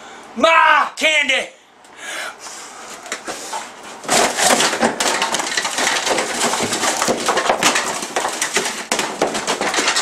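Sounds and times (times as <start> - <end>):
kitchen items crashing and clattering: 4.1 - 10.0.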